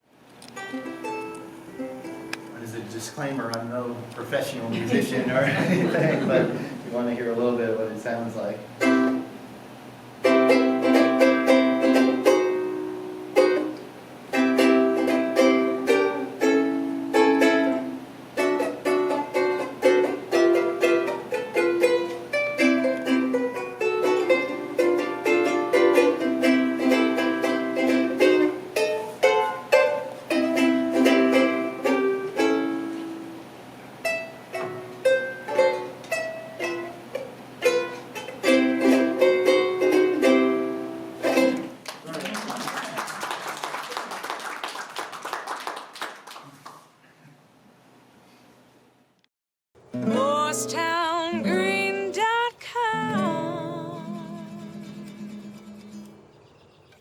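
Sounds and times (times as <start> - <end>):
ukulele strumming chords: 0.4 - 2.8, 8.7 - 41.8, 49.8 - 56.3.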